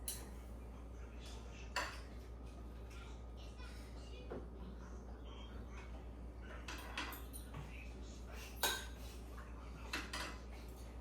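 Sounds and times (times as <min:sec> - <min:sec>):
cutlery clinking on plates: 0:00.0 - 0:00.4, 0:01.2 - 0:02.6, 0:06.5 - 0:07.8, 0:08.4 - 0:11.0.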